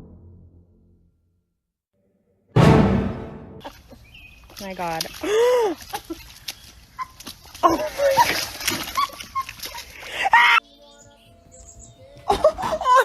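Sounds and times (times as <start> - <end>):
dog yelping: 7.0 - 10.6.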